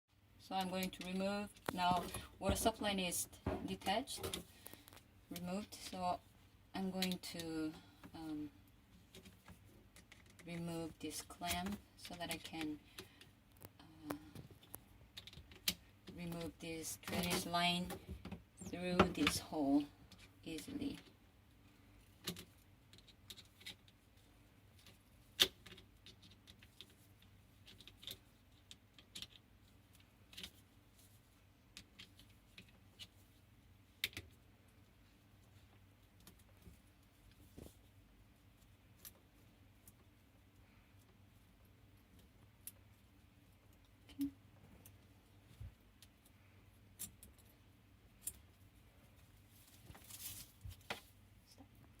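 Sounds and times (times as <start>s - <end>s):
soft rustle: 19.6s - 52.0s.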